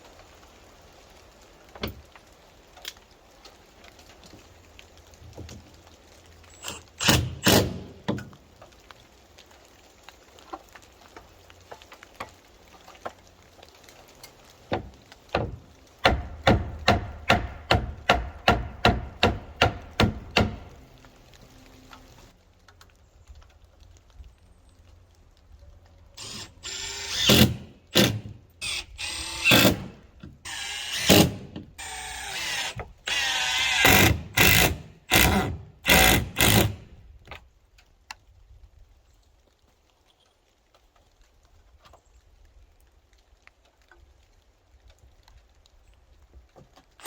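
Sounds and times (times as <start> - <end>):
power drill running: 26.2 - 29.9, 30.5 - 36.8.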